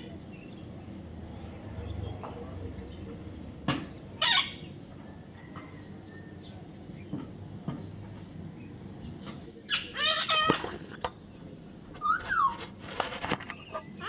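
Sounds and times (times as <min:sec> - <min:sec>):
parrot squawk: 0:04.2 - 0:04.7, 0:09.7 - 0:10.7.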